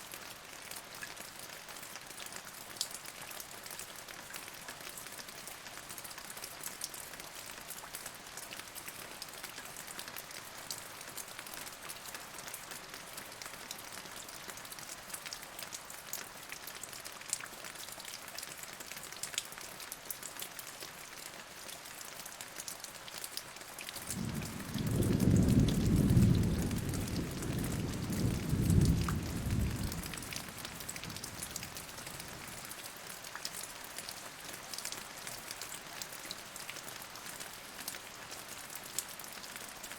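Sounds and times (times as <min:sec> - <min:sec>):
steady rain falling: 0:00.0 - 0:39.9
low thunder rumble: 0:24.2 - 0:31.6.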